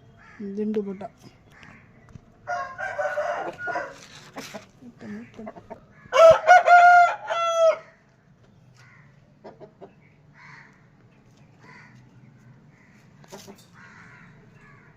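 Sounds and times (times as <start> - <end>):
rooster crowing: 2.5 - 4.1, 6.1 - 8.0.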